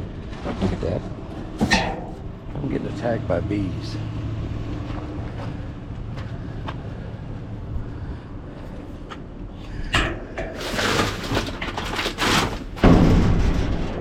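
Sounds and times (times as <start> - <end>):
engine idling: 1.1 - 12.0.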